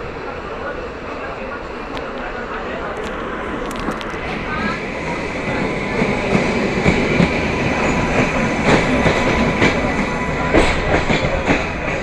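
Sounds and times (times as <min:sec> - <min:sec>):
train rumble: 0:00.0 - 0:12.0
train wheels clacking on rails: 0:03.0 - 0:12.0.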